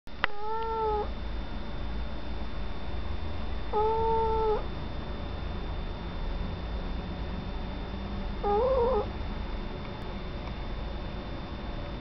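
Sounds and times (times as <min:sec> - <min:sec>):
steady low hum: 0:00.1 - 0:12.0
cat meowing: 0:00.3 - 0:01.1, 0:03.7 - 0:04.7, 0:08.4 - 0:09.1.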